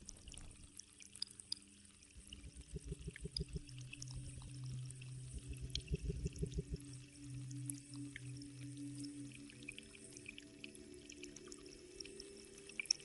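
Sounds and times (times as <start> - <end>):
recorded rain and dripping water: 0.0 - 13.0
soft low pulsing: 2.1 - 11.2
low held tone: 2.2 - 9.9
droplet ticks: 2.5 - 7.0.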